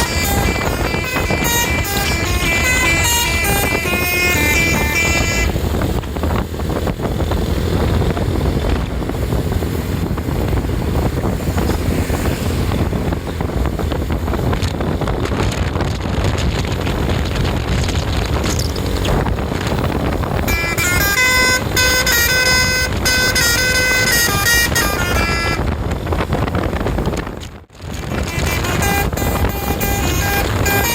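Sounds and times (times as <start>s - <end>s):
bus horn playing a tune: 0.0s - 5.7s, 20.4s - 25.8s, 28.0s - 30.9s
traffic rumble: 0.0s - 30.9s.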